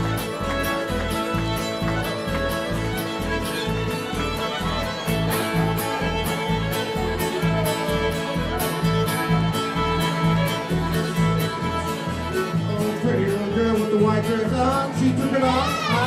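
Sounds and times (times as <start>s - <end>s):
fiddles playing melody: 0.0s - 14.7s
guitar strumming: 0.0s - 16.0s
mandolin strumming: 0.0s - 16.0s.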